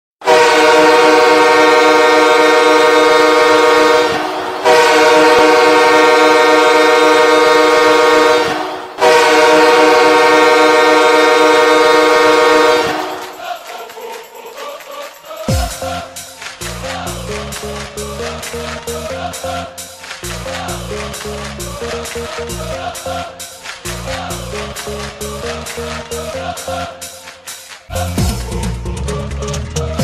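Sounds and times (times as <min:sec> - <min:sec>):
arena goal horn blasts: 0:00.2 - 0:13.4.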